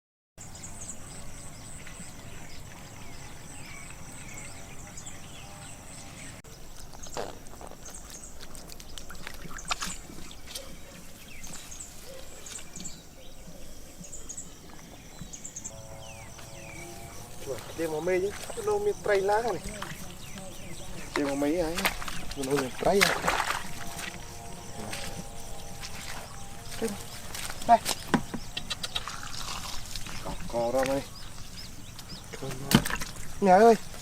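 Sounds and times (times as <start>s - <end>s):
high animal chirps: 23.6s - 30.4s.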